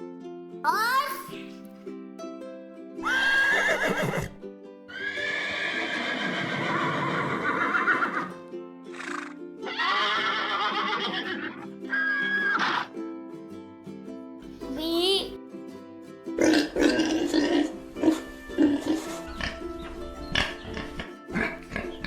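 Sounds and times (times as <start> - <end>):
background music: 0.0 - 6.3, 8.2 - 22.0
horse neighing: 3.0 - 4.4, 5.0 - 8.3, 9.0 - 12.9.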